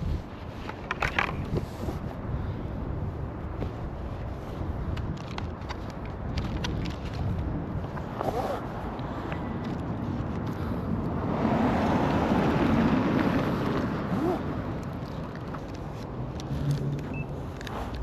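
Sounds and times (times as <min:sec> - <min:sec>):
car driving past: 0:11.1 - 0:14.4.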